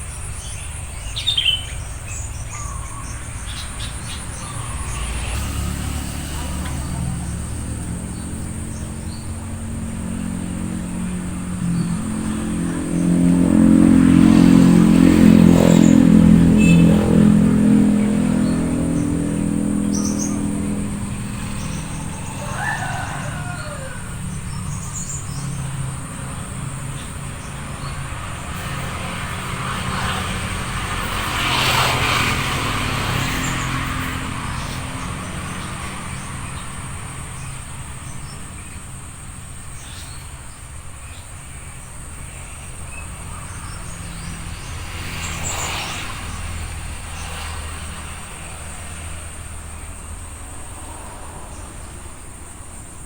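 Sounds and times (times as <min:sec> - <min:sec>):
low engine hum: 0:00.0 - 0:53.0
motor vehicle passing: 0:00.0 - 0:53.0
bird chirps: 0:00.1 - 0:10.2
high insect buzz: 0:00.4 - 0:53.0.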